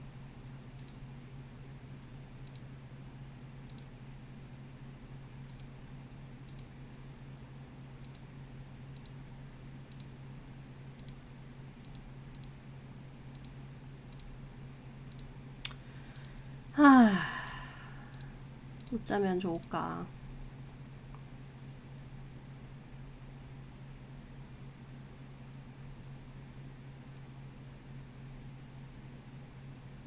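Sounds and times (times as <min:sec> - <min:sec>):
computer mouse clicking: 0:00.7 - 0:01.0, 0:02.4 - 0:02.7, 0:03.6 - 0:03.9, 0:05.4 - 0:05.7, 0:06.4 - 0:06.7, 0:08.0 - 0:09.2, 0:09.9 - 0:10.1, 0:11.0 - 0:12.6, 0:13.3 - 0:14.3, 0:15.1 - 0:16.4.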